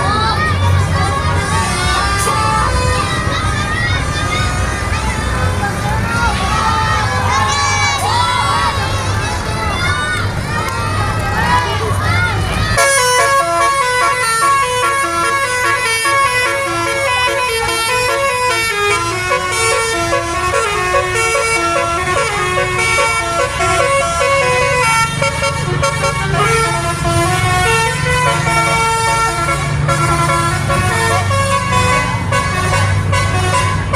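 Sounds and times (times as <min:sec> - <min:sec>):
bus air horns playing a melody: 0:01.4 - 0:03.2, 0:12.8 - 0:33.9.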